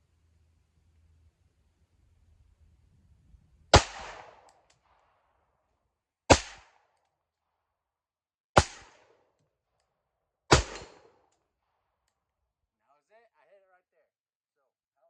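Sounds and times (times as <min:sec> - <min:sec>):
pistol shots with echo: 0:03.7 - 0:04.5, 0:06.3 - 0:06.8, 0:08.6 - 0:09.2, 0:10.5 - 0:11.2.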